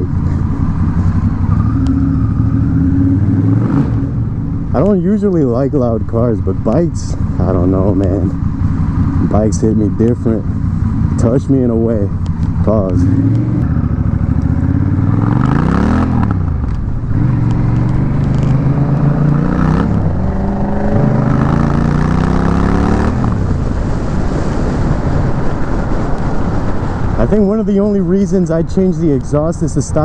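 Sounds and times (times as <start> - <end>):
motorcycle engine revving loudly: 1.2 - 4.3, 12.6 - 23.4.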